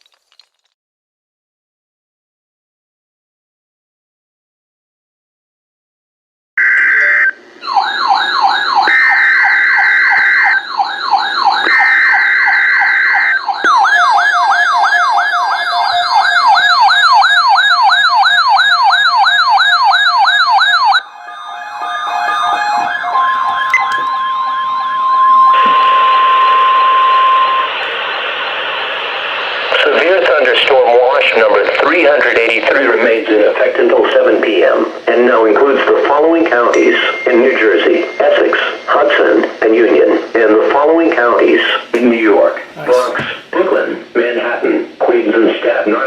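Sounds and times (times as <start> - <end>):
warbling electronic siren: 6.6 - 30.2
steady warning alert tone: 20.7 - 29.5
static hiss: 27.4 - 36.0.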